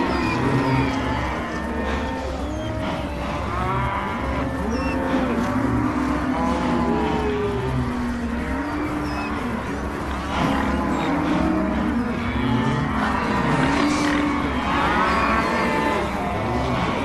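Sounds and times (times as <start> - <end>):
stomach growling: 0.0 - 17.0.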